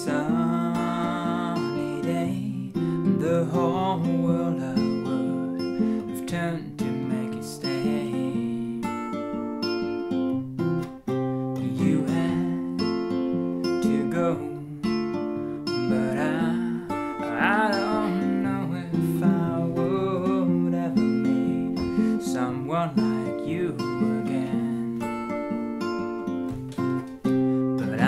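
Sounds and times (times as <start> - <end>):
acoustic guitar strumming chords: 0.0 - 28.0.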